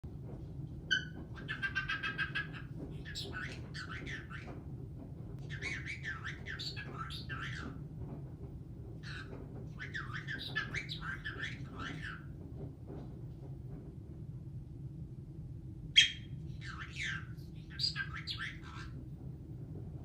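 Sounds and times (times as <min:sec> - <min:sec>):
parrot whistling and chattering: 0:00.9 - 0:04.5, 0:05.4 - 0:07.8, 0:09.0 - 0:12.3, 0:16.0 - 0:19.0.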